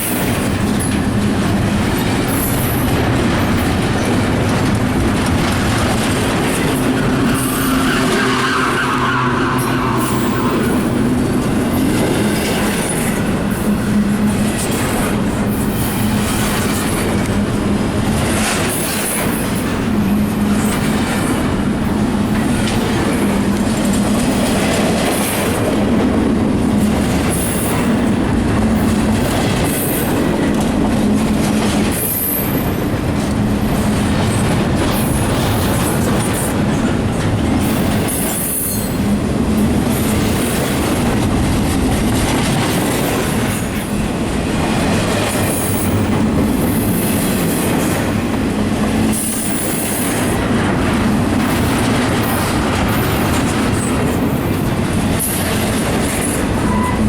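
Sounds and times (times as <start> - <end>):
train wheels rumbling over rails: 0.0 - 57.0
high-pitched wheel squeals: 6.8 - 11.7, 56.6 - 57.0.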